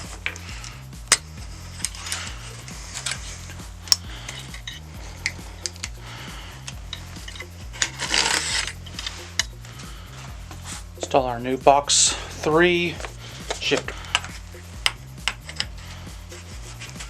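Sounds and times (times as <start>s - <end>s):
metal scrape: 0.0s - 11.2s, 12.0s - 17.0s
background music: 0.0s - 17.0s
metallic tool clicks: 0.2s - 2.3s, 2.9s - 6.0s, 6.6s - 9.6s, 13.0s - 15.8s.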